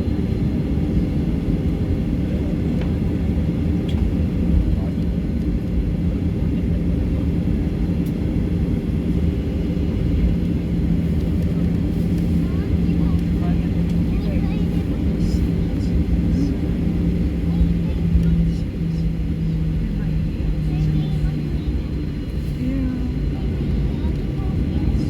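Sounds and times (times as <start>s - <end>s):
aircraft cabin rumble: 0.0s - 25.0s.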